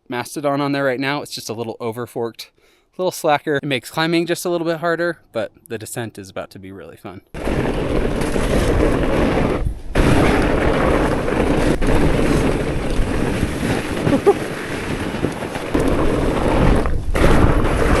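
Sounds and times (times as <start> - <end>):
bike tyres rumbling on snow: 7.4 - 18.0
wind buffeting microphone: 7.4 - 18.0.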